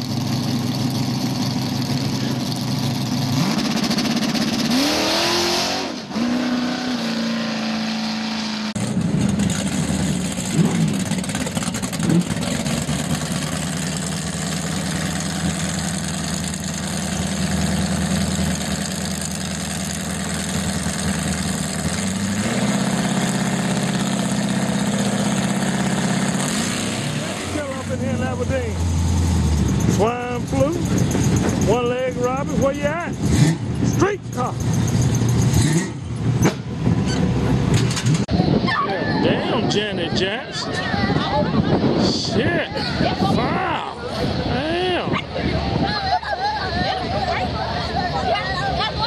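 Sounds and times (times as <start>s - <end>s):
drag car engine revving: 0.0s - 38.4s.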